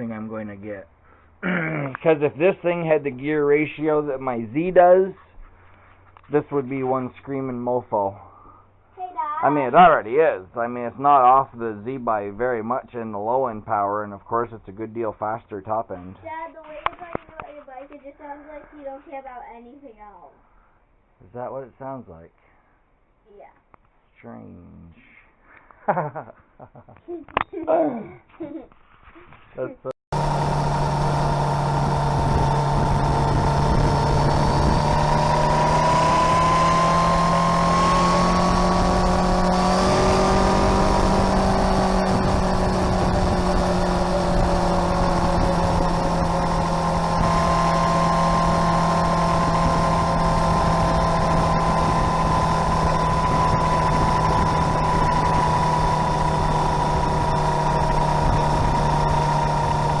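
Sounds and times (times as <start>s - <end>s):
motorcycle engine cruising: 9.4s - 13.3s, 30.1s - 60.0s
wind and road noise: 30.1s - 60.0s.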